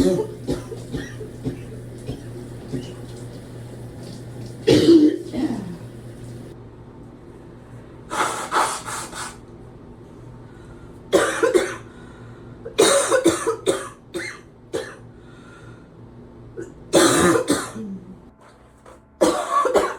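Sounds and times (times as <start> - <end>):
person coughing deeply: 0.0 - 3.0, 4.6 - 5.8, 11.1 - 11.9, 12.8 - 15.0, 16.6 - 18.1, 19.2 - 19.9.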